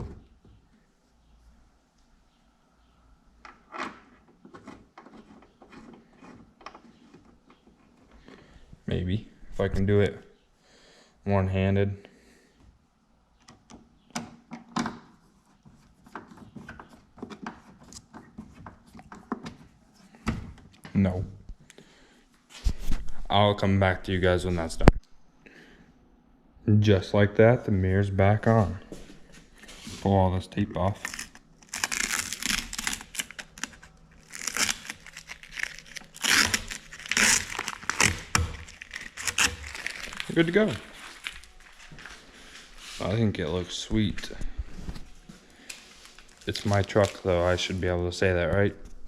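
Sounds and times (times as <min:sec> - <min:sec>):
tape ripping and crinkling: 0:30.9 - 0:42.2, 0:46.0 - 0:47.7.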